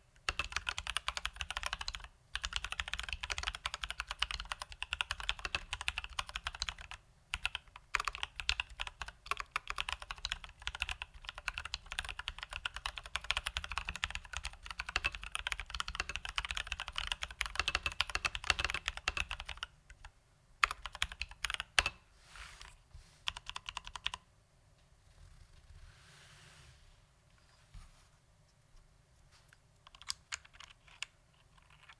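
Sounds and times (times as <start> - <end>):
fast mechanical keyboard typing: 0.2 - 22.0, 23.3 - 24.2, 29.9 - 31.9.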